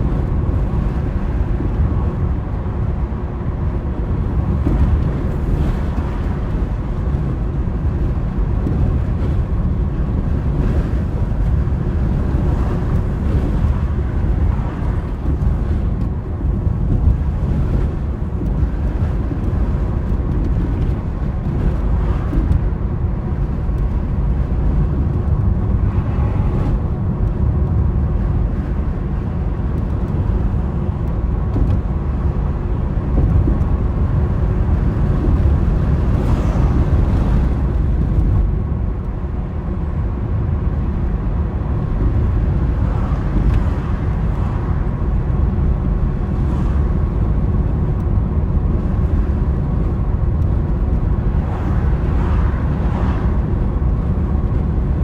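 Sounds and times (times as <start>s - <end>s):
car engine and road rumble: 0.0s - 55.0s
wind swishing: 30.5s - 39.3s.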